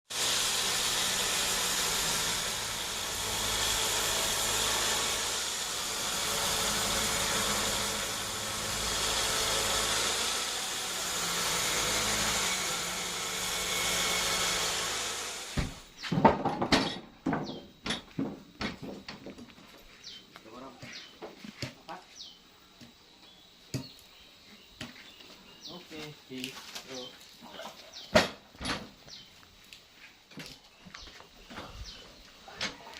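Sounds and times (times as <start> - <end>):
band saw cutting log: 0.0 - 16.0
sharp knocks and clatter: 15.5 - 19.5.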